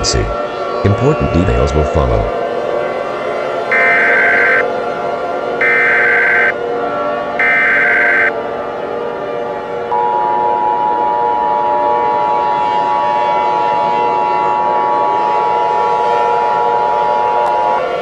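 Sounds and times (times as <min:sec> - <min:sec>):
two-tone alert signal: 0:03.7 - 0:04.6, 0:05.6 - 0:06.6, 0:07.4 - 0:08.3.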